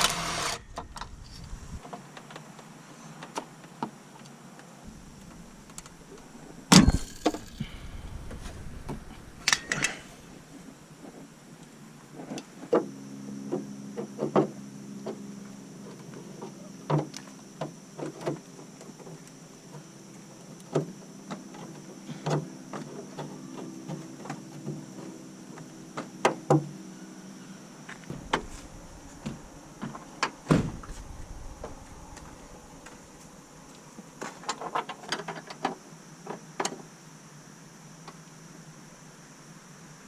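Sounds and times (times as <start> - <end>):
steady low hum: 0.0 - 1.8, 4.9 - 12.0, 27.7 - 35.0
heavy thump: 4.9 - 10.8, 28.1 - 34.3.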